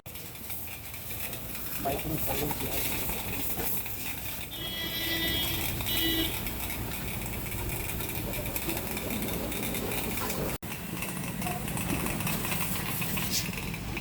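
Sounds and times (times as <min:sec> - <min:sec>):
street traffic: 0:00.0 - 0:14.0
vehicle horn honking: 0:04.5 - 0:06.7.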